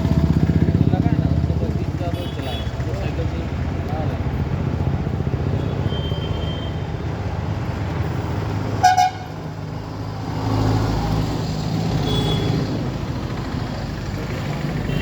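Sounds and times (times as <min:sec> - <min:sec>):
road traffic: 0:00.0 - 0:15.0
vehicle engine rumble: 0:00.0 - 0:15.0
vehicle horn toot: 0:08.8 - 0:09.4, 0:12.0 - 0:12.6.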